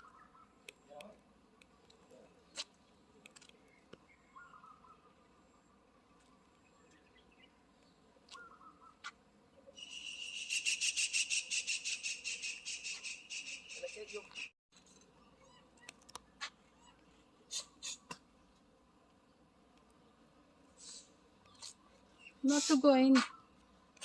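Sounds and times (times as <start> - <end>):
faint chirps and clicks: 0.0 - 5.1, 6.2 - 9.2, 9.8 - 20.0, 20.8 - 24.0
insect pulsing high buzz: 9.8 - 14.2.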